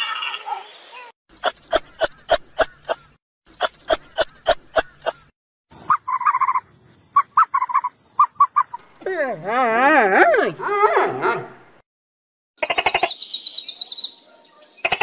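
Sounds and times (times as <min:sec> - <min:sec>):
short evenly spaced animal calls: 0:05.7 - 0:09.0
high chirping animal calls: 0:05.7 - 0:09.8, 0:12.6 - 0:15.0.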